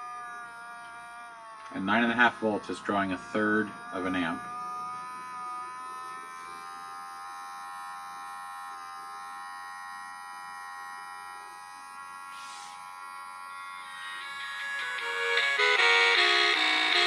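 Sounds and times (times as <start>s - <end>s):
small electric motor buzzing: 0.0s - 17.0s
held electronic tones: 1.6s - 8.2s, 13.7s - 17.0s
brief hiss: 12.3s - 12.8s.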